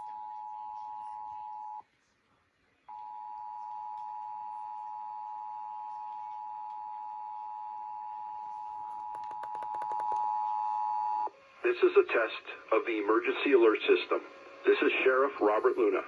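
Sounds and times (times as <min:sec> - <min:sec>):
faint rapid clicks: 0:08.9 - 0:10.3.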